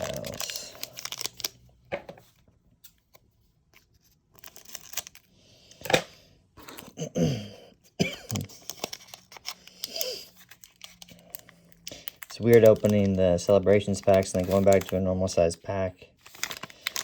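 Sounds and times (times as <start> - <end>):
foil wrapper tearing and crinkling: 0.0 - 1.6, 4.4 - 5.2, 8.3 - 15.4, 16.2 - 17.0.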